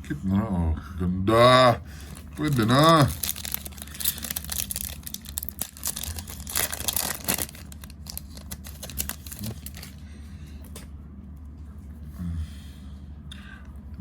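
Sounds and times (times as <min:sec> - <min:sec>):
foil wrappers crinkling: 0:01.9 - 0:10.0
cards rustling: 0:02.0 - 0:10.0.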